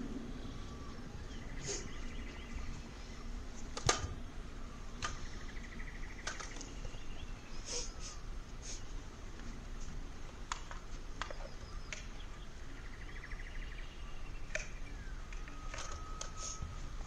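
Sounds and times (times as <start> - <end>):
birdlike chirps and trills: 0.0 - 9.1, 10.8 - 17.0
sharp clicks: 10.4 - 12.2, 14.4 - 16.6.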